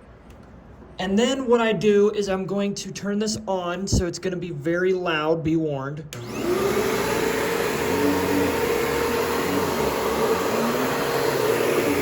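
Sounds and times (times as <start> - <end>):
vacuum cleaner running: 6.2 - 12.0.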